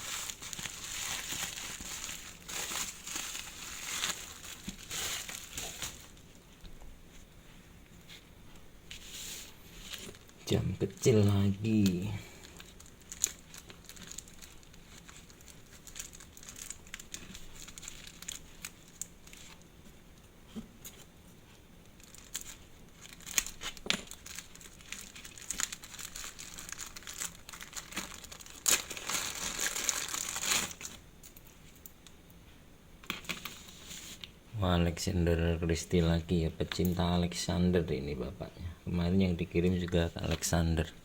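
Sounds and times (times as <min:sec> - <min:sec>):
packaging crinkling: 0:00.0 - 0:06.4, 0:09.0 - 0:19.7, 0:21.9 - 0:31.5
small crackles and clicks: 0:10.0 - 0:20.2, 0:20.8 - 0:32.4.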